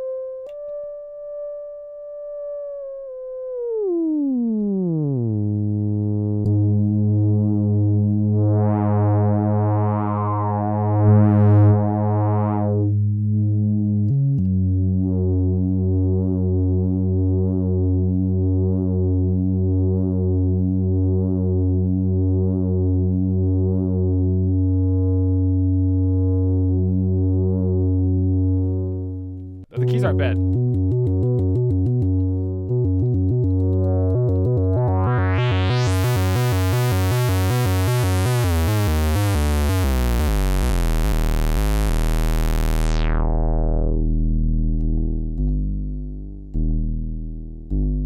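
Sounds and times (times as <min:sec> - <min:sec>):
pulsing synth bass tone: 0:03.4 - 0:28.9, 0:29.8 - 0:48.0.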